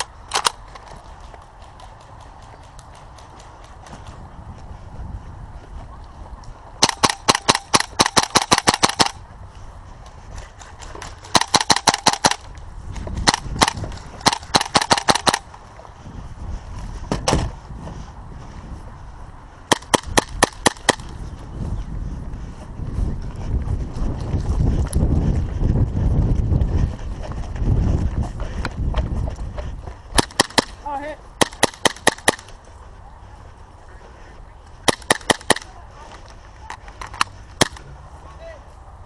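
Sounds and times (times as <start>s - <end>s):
airsoft guns firing bursts: 6.8s - 9.2s, 11.2s - 12.4s, 13.2s - 15.5s, 30.2s - 32.5s, 34.8s - 35.7s.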